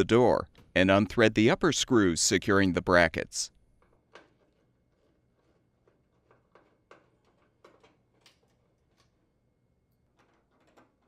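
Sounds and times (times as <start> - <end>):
faint clicks and taps of screws: 3.8 - 9.3, 9.9 - 11.0.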